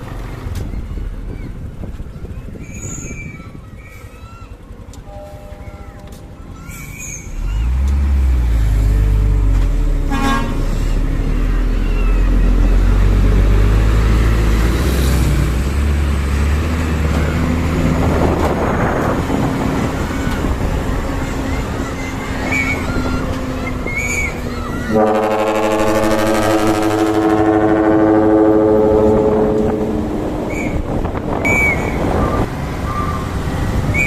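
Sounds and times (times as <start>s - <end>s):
deep air horn blast: 10.0s - 11.0s, 24.9s - 32.4s.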